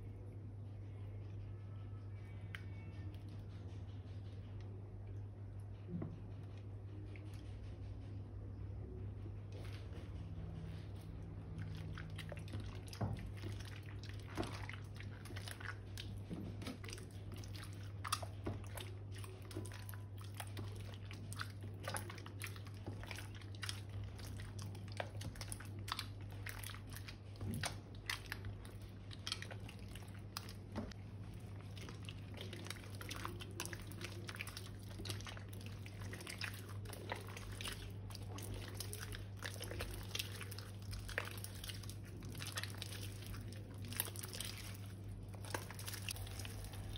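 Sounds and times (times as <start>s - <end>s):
steady low hum: 0.0s - 46.9s
slime crackling and squelching: 9.4s - 46.9s.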